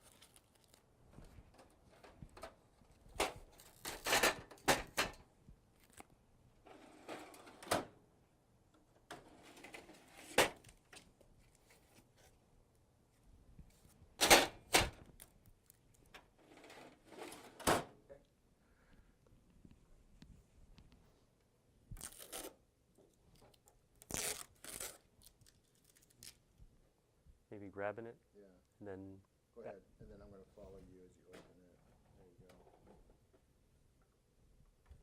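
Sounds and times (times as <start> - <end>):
tray scraping slide: 6.7 - 7.8, 16.4 - 17.7.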